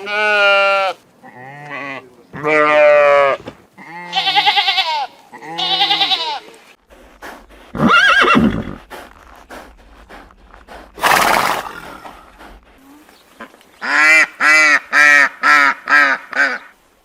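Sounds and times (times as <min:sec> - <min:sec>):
quavering animal calls: 0:05.4 - 0:13.2
harsh noisy animal blast: 0:07.0 - 0:12.8
animal call rising and falling: 0:07.7 - 0:08.9.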